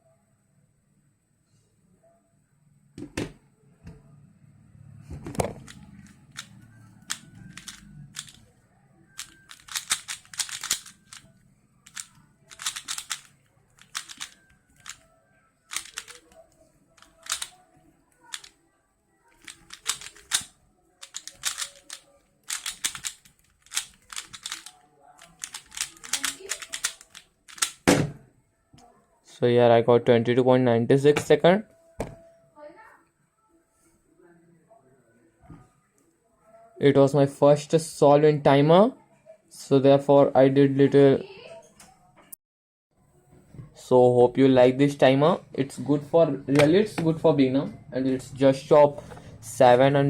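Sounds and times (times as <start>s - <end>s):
speedcube clicking turns: 5.6s - 8.4s, 9.2s - 15.0s, 15.7s - 16.4s, 17.0s - 17.6s, 18.2s - 18.5s, 19.4s - 27.8s.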